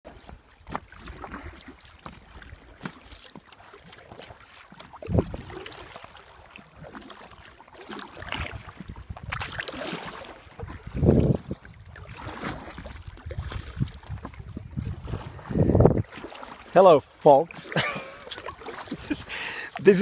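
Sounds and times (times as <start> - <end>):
paddle splashing in water: 0.1 - 20.0
wind on microphone: 5.0 - 5.8, 8.2 - 9.6, 10.5 - 16.2.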